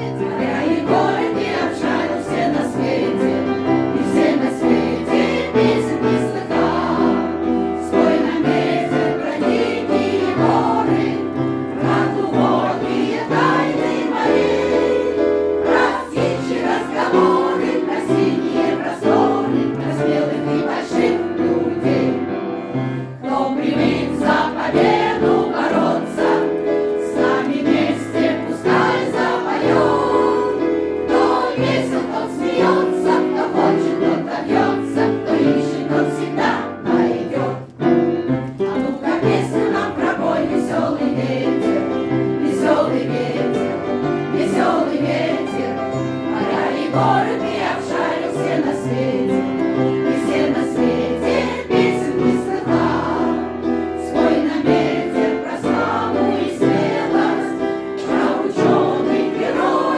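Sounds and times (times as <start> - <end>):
choir singing in unison: 0.0 - 59.9
instrumental accompaniment: 0.0 - 59.9.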